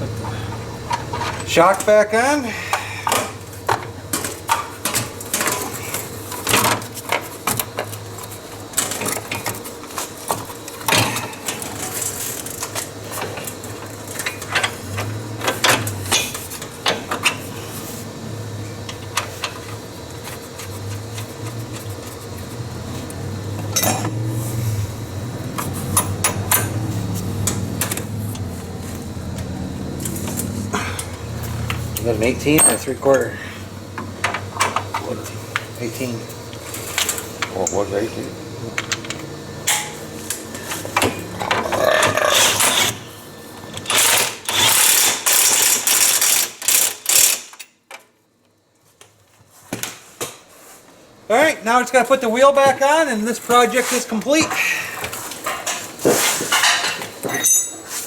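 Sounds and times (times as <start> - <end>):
steady low hum: 0.0 - 43.9
tools and metal parts clinking: 0.2 - 1.9, 23.7 - 24.2, 25.6 - 28.4, 29.1 - 33.3, 43.8 - 48.0, 56.5 - 58.0.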